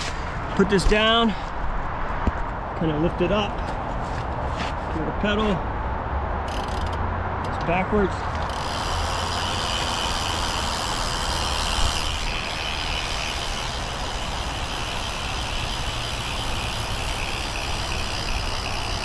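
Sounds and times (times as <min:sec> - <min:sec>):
bicycle freewheel ticking: 0:06.5 - 0:07.0, 0:08.3 - 0:19.0.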